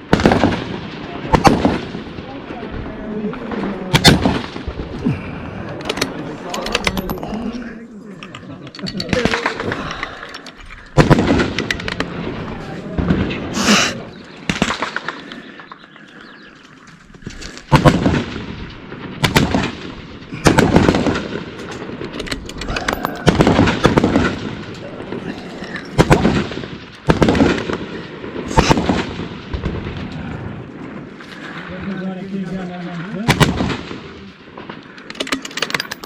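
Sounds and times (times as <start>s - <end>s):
gunshots with echo: 3.5s - 4.9s, 10.9s - 15.4s, 17.7s - 22.0s.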